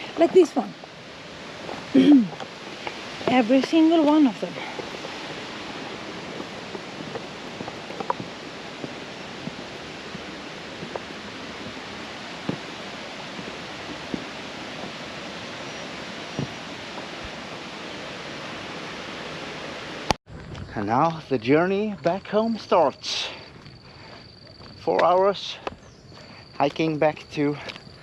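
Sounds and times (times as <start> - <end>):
waterfall rushing: 0.0 - 20.2.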